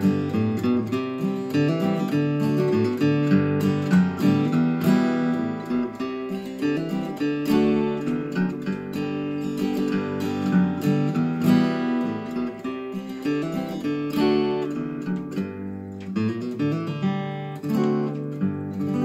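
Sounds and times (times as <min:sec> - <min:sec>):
acoustic guitar strummed: 0:00.0 - 0:19.0.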